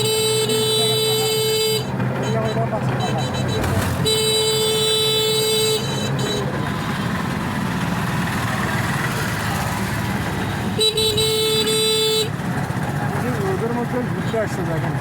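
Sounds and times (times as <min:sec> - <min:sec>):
vehicle horn blasts: 0:00.0 - 0:06.8, 0:10.5 - 0:12.4
road traffic noise: 0:00.0 - 0:15.0.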